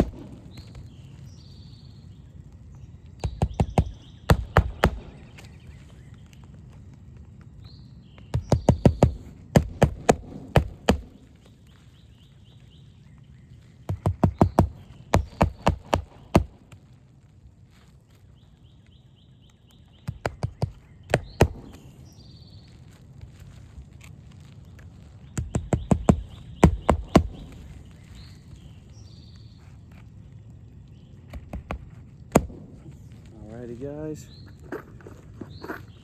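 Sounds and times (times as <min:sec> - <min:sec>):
hammer striking roofing nails: 0:00.0 - 0:00.5, 0:03.2 - 0:05.5, 0:08.3 - 0:11.4, 0:13.9 - 0:16.6, 0:20.0 - 0:22.0, 0:25.4 - 0:27.8, 0:31.3 - 0:32.8
birds chirping: 0:00.0 - 0:36.0.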